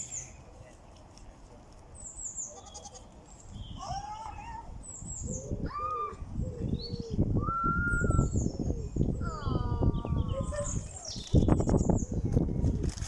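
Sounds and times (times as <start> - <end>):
small birds chirping: 0.0 - 0.6, 1.9 - 7.2, 8.0 - 12.4.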